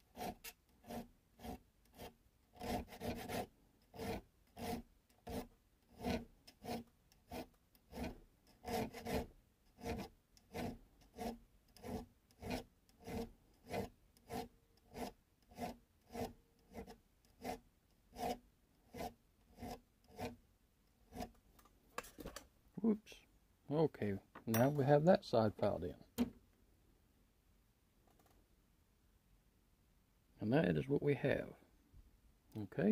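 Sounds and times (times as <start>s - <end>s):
hand file rasping on metal: 0.0s - 21.4s.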